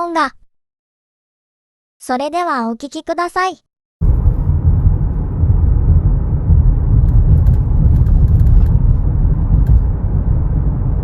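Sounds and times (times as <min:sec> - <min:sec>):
car road rumble: 0:04.0 - 0:11.0.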